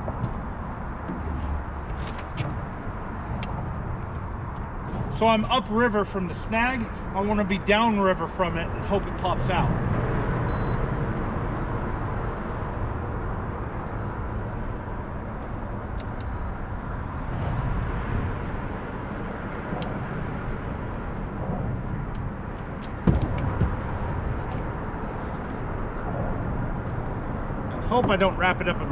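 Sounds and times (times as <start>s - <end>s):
wind buffeting microphone: 0.0s - 28.9s
sharp thump: 23.0s - 24.7s.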